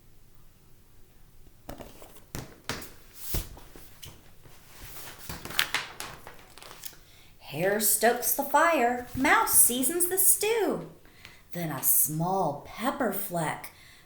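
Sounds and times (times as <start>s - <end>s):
paper rustling: 1.7s - 7.0s, 8.9s - 9.8s.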